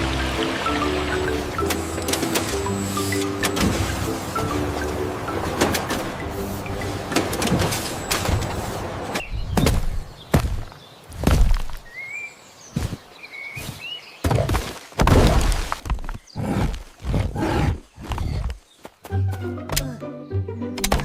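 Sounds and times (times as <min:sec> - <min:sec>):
dull thuds and knocks: 0:09.4 - 0:11.8.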